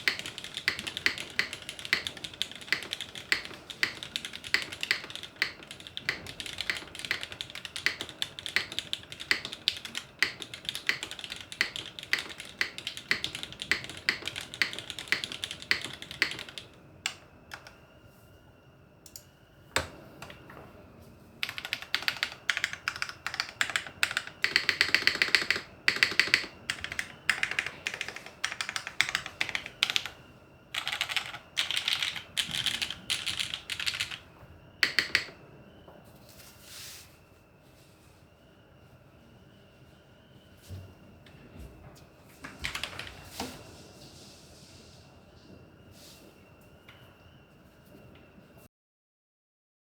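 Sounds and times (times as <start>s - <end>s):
long keys pressed rapidly: 0.0s - 17.8s, 21.4s - 35.4s
mechanical keyboard typing: 0.0s - 17.8s, 21.4s - 34.2s, 34.8s - 35.4s, 42.6s - 43.2s.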